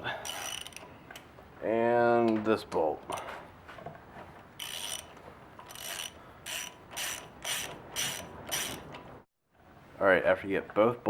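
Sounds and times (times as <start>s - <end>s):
ratchet wrench clicking: 0.2s - 0.8s, 4.6s - 8.9s.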